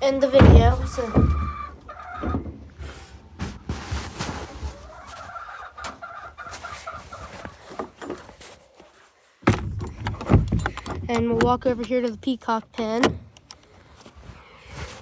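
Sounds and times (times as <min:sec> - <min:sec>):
chickens clucking: 0:00.0 - 0:03.3, 0:04.6 - 0:08.3
knocks and rustling of handling: 0:00.3 - 0:15.0
loud bump: 0:00.4 - 0:01.5.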